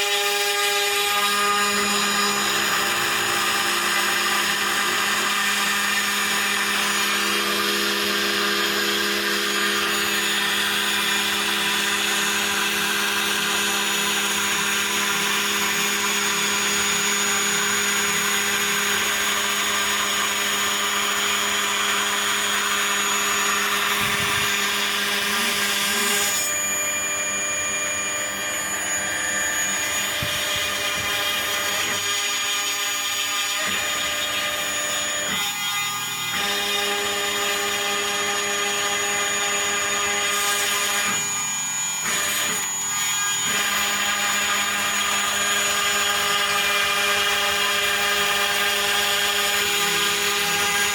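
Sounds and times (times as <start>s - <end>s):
router spindle whine: 0.0s - 50.9s
hiss of cutting foam: 23.4s - 26.5s.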